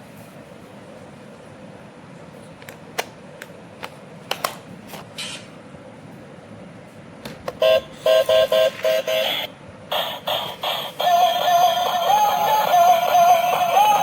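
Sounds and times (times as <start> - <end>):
loud electronic tone: 7.6 - 14.0
toy car electric motor running: 8.3 - 14.0.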